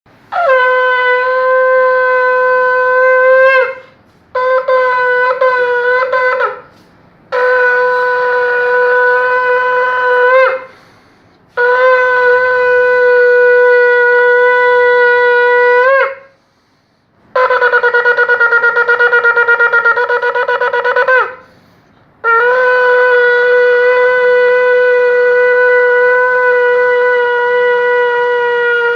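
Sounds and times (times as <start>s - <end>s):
shofar blasts: 0.1s - 16.5s, 17.3s - 28.9s.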